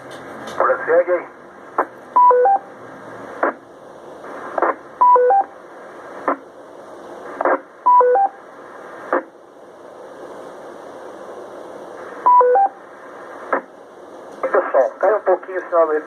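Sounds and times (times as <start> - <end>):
radio static hiss: 0.5 - 16.0
short radio noise bursts: 3.4 - 3.6, 4.2 - 5.2, 6.1 - 6.5, 7.3 - 8.3, 14.4 - 16.0.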